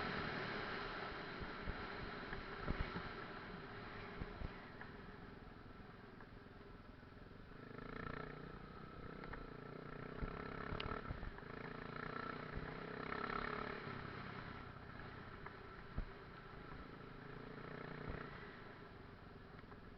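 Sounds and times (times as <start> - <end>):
faint motorcycle engine: 0.0 - 19.9.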